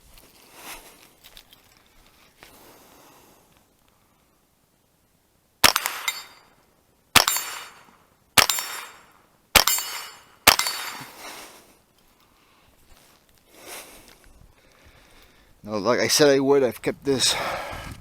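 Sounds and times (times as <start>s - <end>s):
rifle shots: 5.6s - 6.4s, 7.2s - 11.2s.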